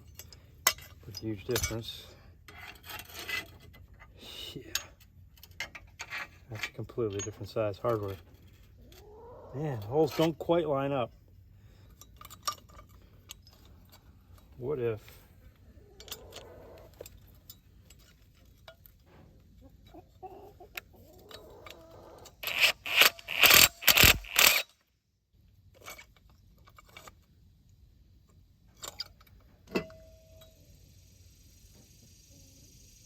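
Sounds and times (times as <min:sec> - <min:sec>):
clinks and taps of metal hardware: 0:00.0 - 0:01.9, 0:04.7 - 0:08.2, 0:11.9 - 0:14.5, 0:28.3 - 0:30.6
chickens clucking: 0:08.8 - 0:09.7, 0:15.6 - 0:17.0, 0:19.6 - 0:22.4.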